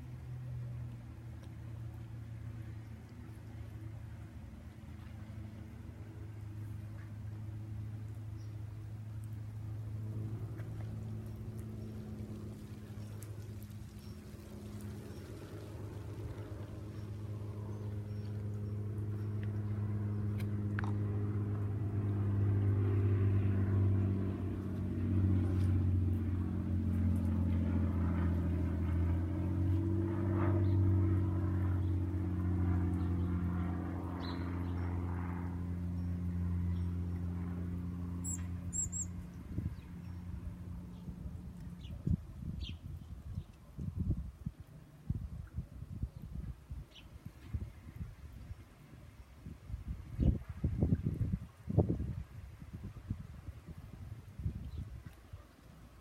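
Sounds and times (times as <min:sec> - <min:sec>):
vehicle engine humming: 0:00.0 - 0:42.1
high bird chirp: 0:38.2 - 0:39.2.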